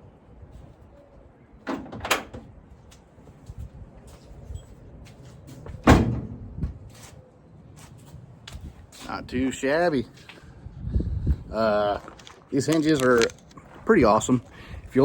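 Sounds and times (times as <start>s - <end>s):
truck door knocking and clunking: 5.8s - 6.7s.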